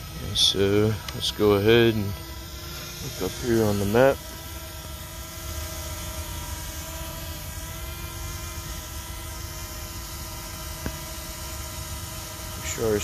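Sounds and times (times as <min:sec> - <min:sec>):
drone propellers buzzing whine: 0:00.0 - 0:13.0.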